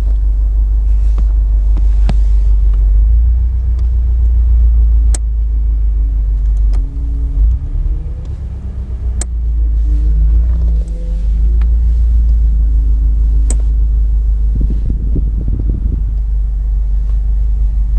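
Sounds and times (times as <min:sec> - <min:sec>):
car engine running: 0:00.0 - 0:17.9
clutch pedal clicks: 0:05.0 - 0:05.5, 0:06.3 - 0:09.4, 0:10.1 - 0:14.5.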